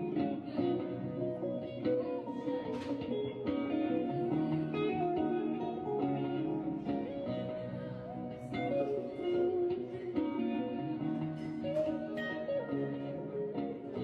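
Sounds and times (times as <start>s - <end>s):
guitar music: 0.0s - 14.0s.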